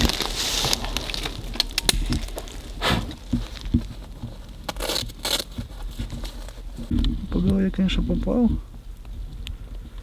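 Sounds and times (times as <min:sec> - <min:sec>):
footsteps in dry forest litter: 0:00.0 - 0:06.9.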